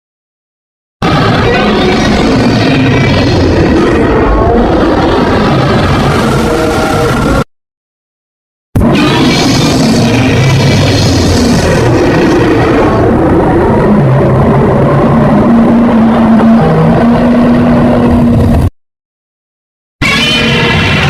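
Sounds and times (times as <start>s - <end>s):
deep rumbling monster roar: 1.0s - 7.4s, 8.8s - 18.7s, 20.0s - 21.0s.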